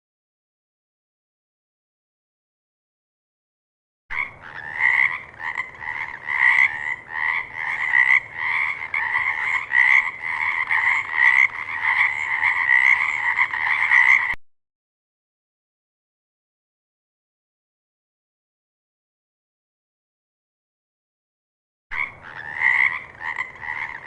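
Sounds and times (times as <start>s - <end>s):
frog croaking: 4.1s - 14.4s, 21.9s - 24.0s.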